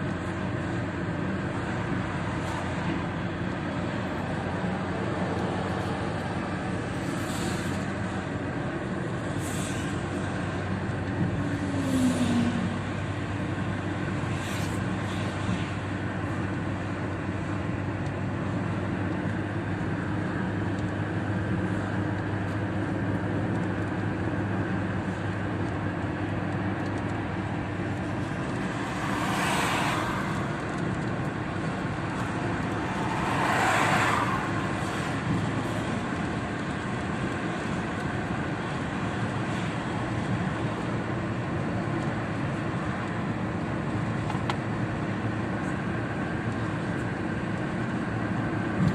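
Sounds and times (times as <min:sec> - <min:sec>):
road and engine drone: 0:00.0 - 0:48.9
passing vehicle whooshes: 0:11.3 - 0:13.2, 0:27.7 - 0:36.4.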